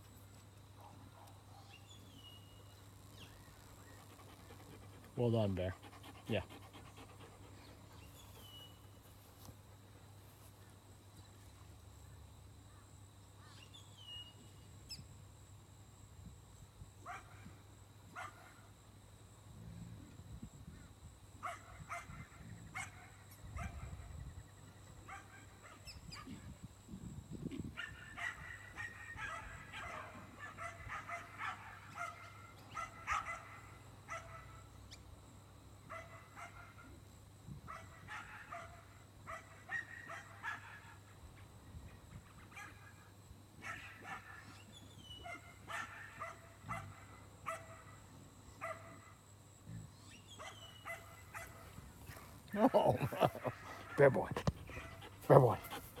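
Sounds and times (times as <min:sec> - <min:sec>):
dogs barking and yipping: 0:27.8 - 0:34.5, 0:37.7 - 0:41.0, 0:43.6 - 0:47.8, 0:50.4 - 0:52.2, 0:52.8 - 0:56.0.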